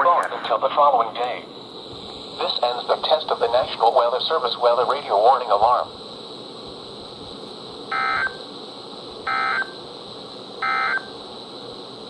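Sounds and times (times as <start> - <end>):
radio hiss: 0.0 - 12.0
data tone bursts: 7.9 - 8.4, 9.3 - 9.8, 10.6 - 11.2.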